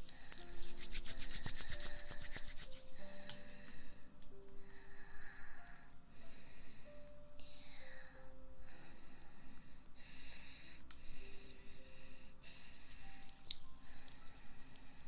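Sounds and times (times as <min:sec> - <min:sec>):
soft background music: 0:00.0 - 0:15.0
rubbing strokes near microphone: 0:00.5 - 0:03.0
soft breaths into microphone: 0:02.8 - 0:15.0.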